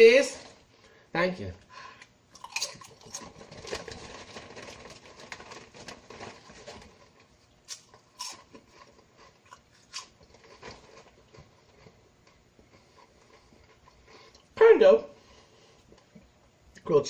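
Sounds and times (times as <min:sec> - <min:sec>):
person chewing potato chips: 0:02.3 - 0:14.6.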